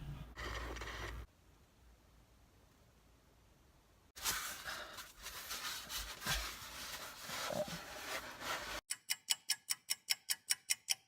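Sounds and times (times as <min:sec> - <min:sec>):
rustling and scraping: 0:04.2 - 0:08.9.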